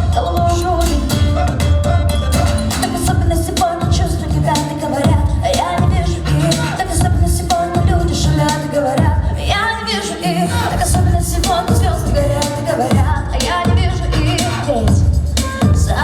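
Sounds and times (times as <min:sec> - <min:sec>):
woman singing over a beat: 0:00.0 - 0:16.0.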